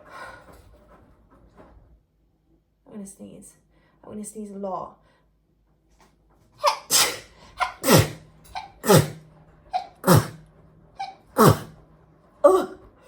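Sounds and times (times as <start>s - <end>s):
woman sneezing: 6.6s - 9.2s, 9.8s - 10.4s, 11.0s - 11.7s, 12.4s - 12.9s.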